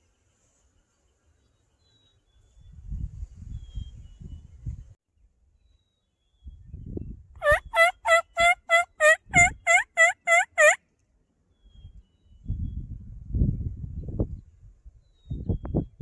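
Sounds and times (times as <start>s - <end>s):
turkey call yelping: 7.4s - 10.8s.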